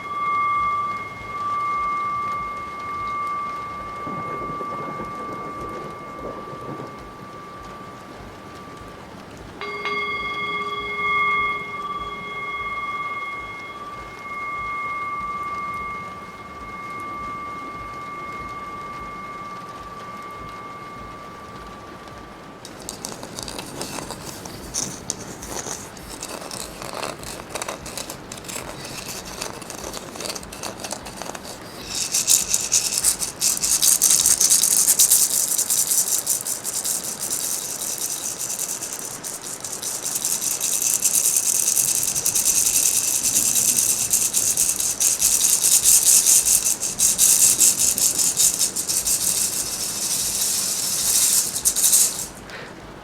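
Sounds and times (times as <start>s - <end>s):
soft rustle: 13.4s - 52.8s
handheld rattle shaken rapidly: 22.6s - 52.6s.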